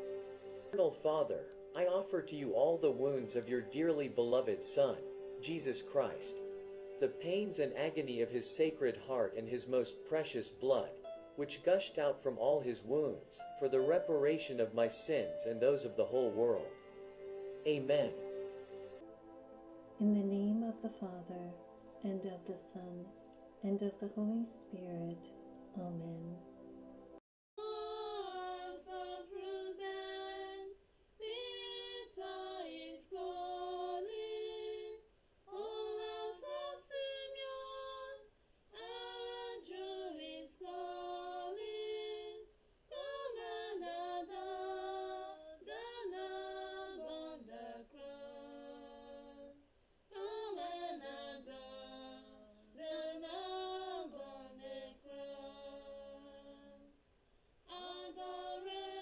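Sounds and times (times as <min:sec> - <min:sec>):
woman singing unaccompanied: 0:20.0 - 0:26.4, 0:27.6 - 0:57.1, 0:57.7 - 0:59.0.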